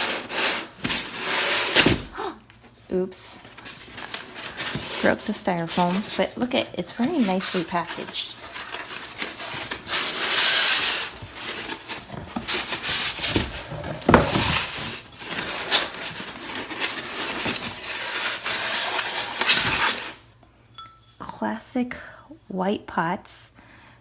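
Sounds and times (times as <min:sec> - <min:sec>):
styrofoam rubbing and scraping: 0:00.0 - 0:02.2, 0:03.6 - 0:20.2.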